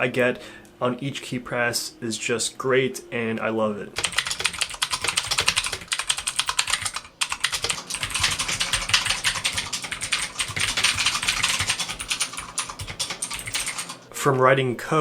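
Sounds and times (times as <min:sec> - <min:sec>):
fast typing on mechanical keyboard: 0:04.0 - 0:14.1.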